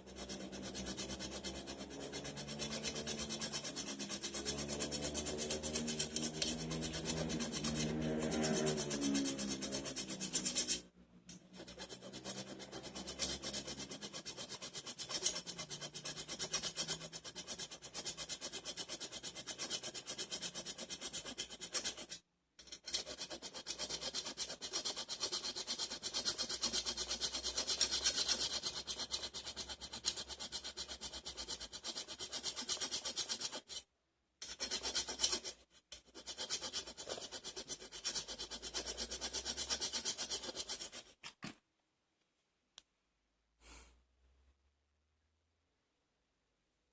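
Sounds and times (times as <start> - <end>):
blade being sharpened rasping: 0.1 - 10.8.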